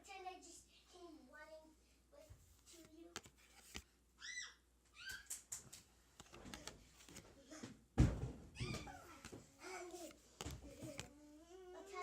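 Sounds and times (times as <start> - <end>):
child squealing: 4.2 - 5.3, 8.6 - 9.2.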